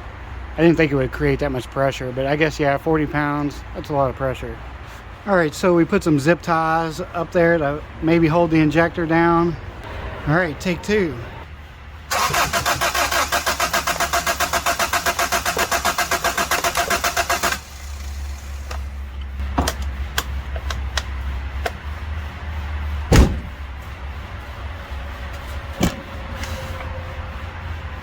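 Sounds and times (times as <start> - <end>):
starter motor cranking: 12.1 - 18.9
loud thump: 23.1 - 23.6.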